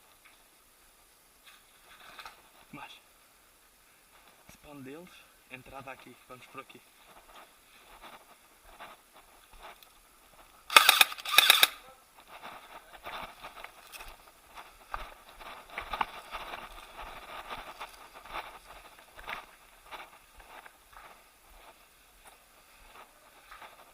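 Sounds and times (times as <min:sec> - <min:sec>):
faint scuffs and rustles: 0:03.8 - 0:04.7, 0:05.5 - 0:10.7, 0:12.0 - 0:23.9
airsoft gun full-auto bursts: 0:10.7 - 0:11.8.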